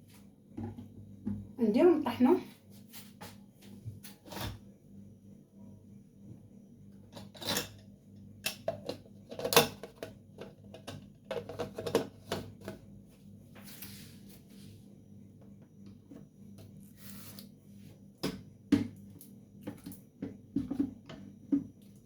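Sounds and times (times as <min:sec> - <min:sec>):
kitchen containers and utensils clicking: 0:08.5 - 0:12.5.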